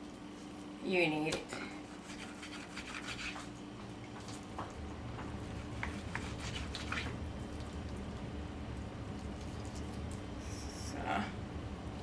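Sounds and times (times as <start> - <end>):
steady low hum: 0.0 - 12.0
wet squishes of raw meat: 4.0 - 4.9, 5.8 - 8.2, 9.0 - 10.4.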